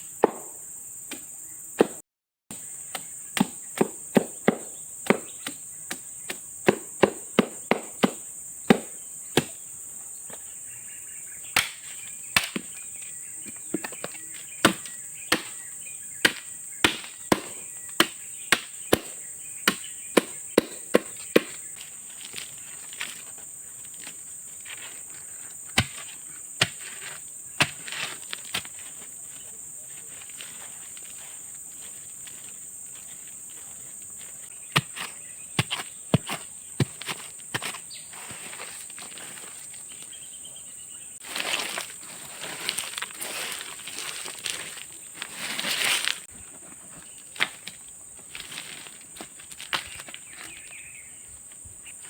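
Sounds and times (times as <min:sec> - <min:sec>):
high insect drone: 0:00.0 - 0:52.0
wood being chopped: 0:00.2 - 0:09.6, 0:11.5 - 0:12.8, 0:13.4 - 0:22.4, 0:25.7 - 0:28.8, 0:34.7 - 0:37.8.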